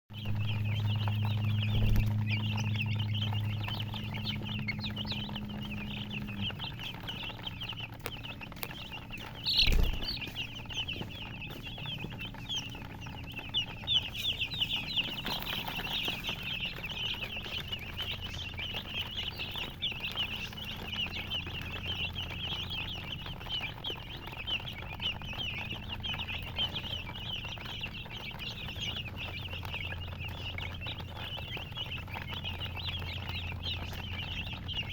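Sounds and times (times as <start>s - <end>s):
low hum: 0.1s - 20.9s
baby chicks peeping: 0.1s - 34.9s.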